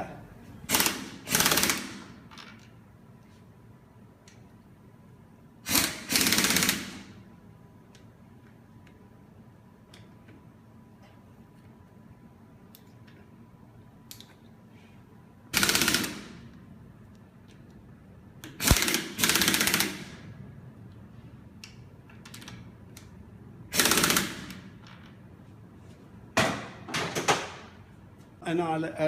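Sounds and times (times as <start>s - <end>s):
pneumatic impact wrench rattling: 0.7s - 2.2s, 5.6s - 7.2s, 15.5s - 16.6s, 18.4s - 20.3s, 23.7s - 24.8s.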